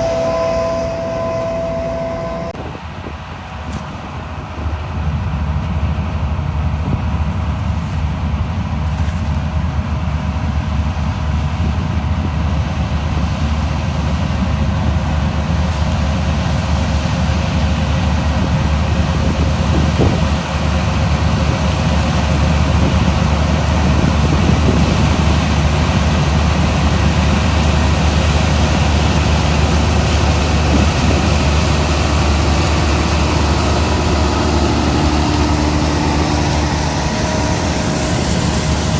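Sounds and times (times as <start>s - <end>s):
steady higher tones: 0.0s - 2.6s, 31.2s - 38.9s
diesel machinery humming: 0.0s - 38.9s.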